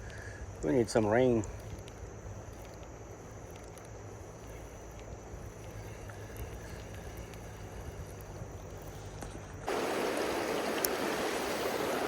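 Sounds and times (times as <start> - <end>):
faint ticks: 0.0 - 9.7
shallow river running: 4.0 - 12.0.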